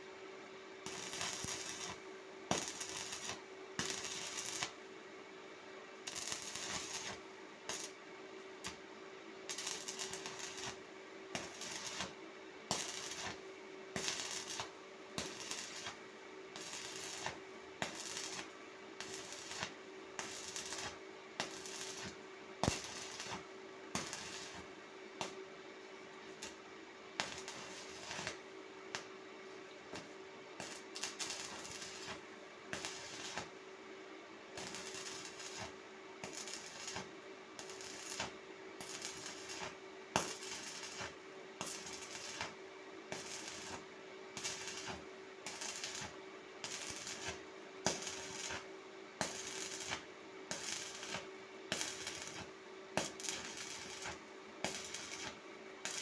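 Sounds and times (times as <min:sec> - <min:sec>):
welding arc crackling: 0:00.9 - 0:04.7, 0:06.1 - 0:08.0, 0:09.5 - 0:13.4, 0:14.0 - 0:16.0, 0:16.6 - 0:23.4, 0:24.0 - 0:25.4, 0:27.2 - 0:28.4, 0:30.6 - 0:32.2, 0:32.8 - 0:33.5, 0:34.6 - 0:43.8, 0:44.4 - 0:56.0.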